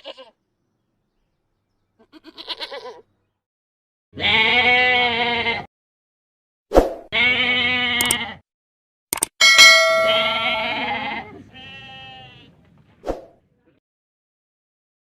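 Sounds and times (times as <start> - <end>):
goats bleating: 0.0 - 0.4, 2.0 - 3.0, 4.2 - 5.7, 7.2 - 8.4, 10.1 - 12.6
short clicks: 8.0 - 8.2, 9.1 - 9.4
brief metallic ring: 9.4 - 10.8.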